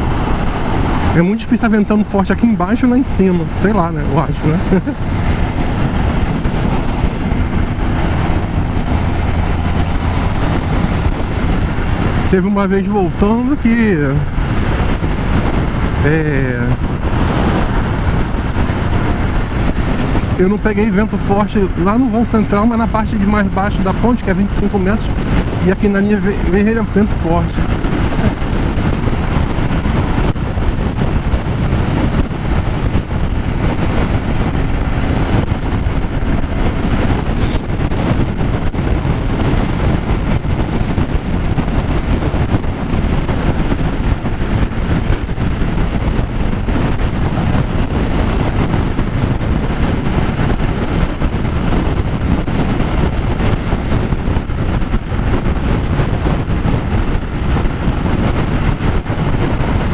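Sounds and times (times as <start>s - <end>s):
road noise: 0.0s - 59.9s
wind rush over microphone: 0.0s - 59.9s
motorcycle engine: 3.4s - 12.4s.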